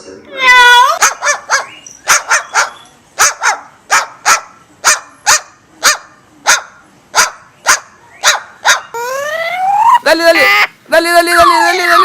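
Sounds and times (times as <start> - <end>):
sharp dog-like barks: 1.0 - 8.9.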